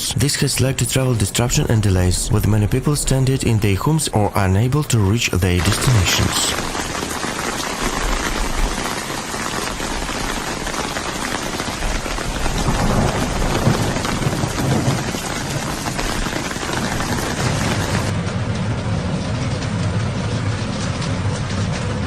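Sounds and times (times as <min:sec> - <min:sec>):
low rumbles: 0:00.0 - 0:08.9
heavy rain pouring: 0:00.0 - 0:22.0.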